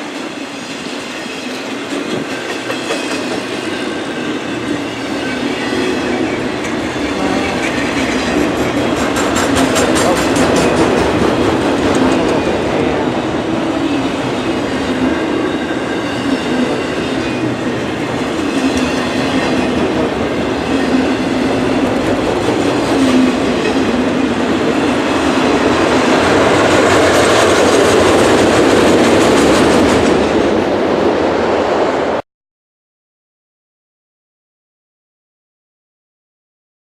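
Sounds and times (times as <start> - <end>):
freight train wheels clicking over joints: 0.1 - 5.6, 7.6 - 12.4.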